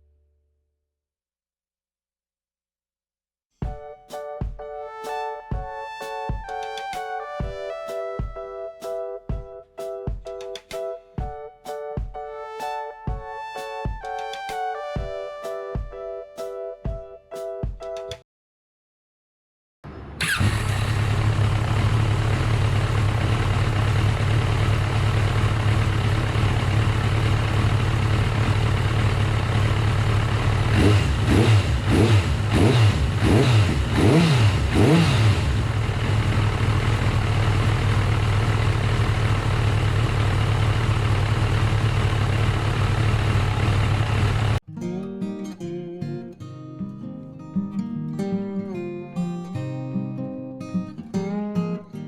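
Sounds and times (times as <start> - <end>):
motorcycle engine idling and revving: 19.9 - 44.6.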